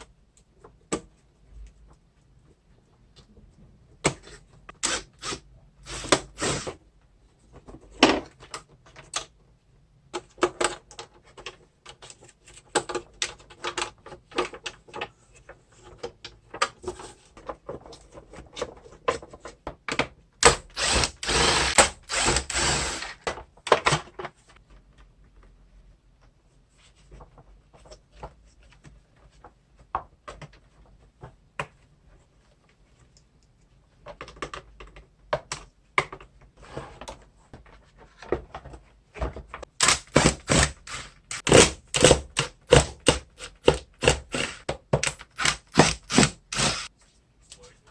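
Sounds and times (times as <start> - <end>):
tools and plastic parts rattling: 10.1 - 20.2, 33.8 - 46.9.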